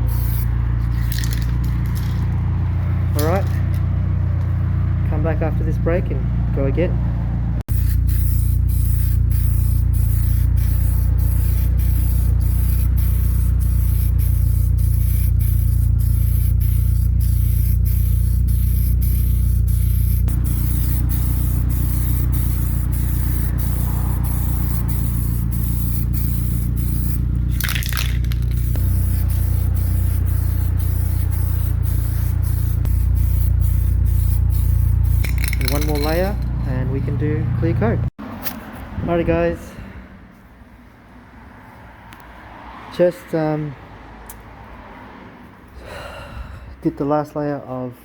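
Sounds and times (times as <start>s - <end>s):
spray paint can hissing: 0.0s - 2.4s, 7.7s - 36.6s.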